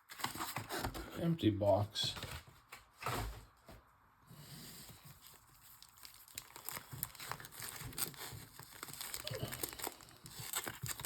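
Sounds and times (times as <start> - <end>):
wrappers crinkling: 5.2 - 11.0.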